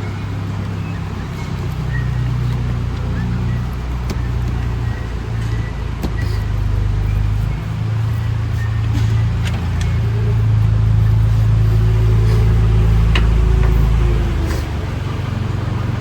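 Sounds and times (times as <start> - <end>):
car engine running: 0.0 - 16.0.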